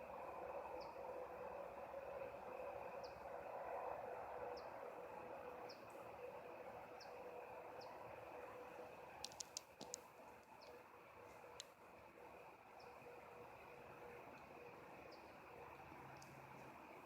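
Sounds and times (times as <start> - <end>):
faint outdoor hum: 0.0 - 17.0
small bird chirping: 5.6 - 5.9, 15.0 - 15.4
sharp clicks: 9.2 - 10.8, 16.2 - 16.4.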